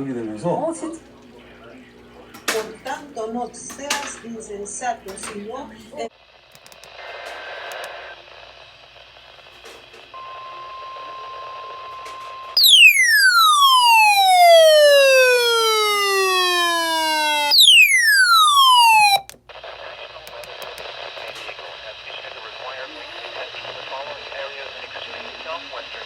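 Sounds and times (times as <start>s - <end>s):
buzzy tone gliding downward: 12.6s - 19.2s
electronic alert tone: 12.6s - 19.2s.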